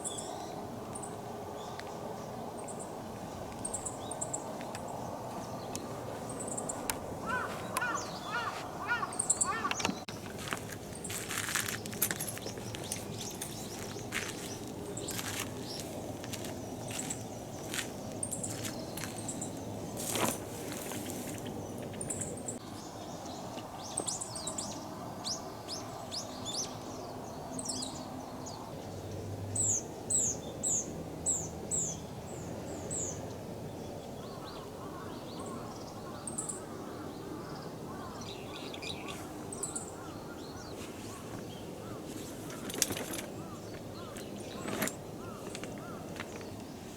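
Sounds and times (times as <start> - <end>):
small bird chirping: 12.2 - 19.6.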